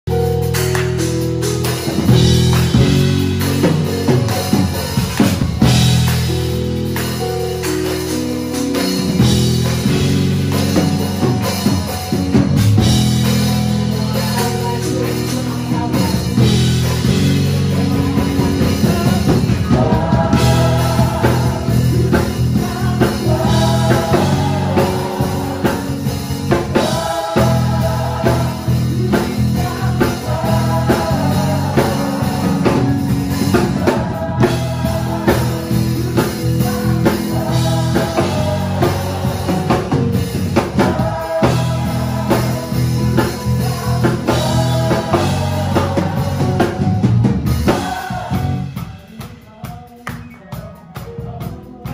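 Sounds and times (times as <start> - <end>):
drum kit and bass beat: 0.1 - 51.9
person singing: 13.3 - 51.9.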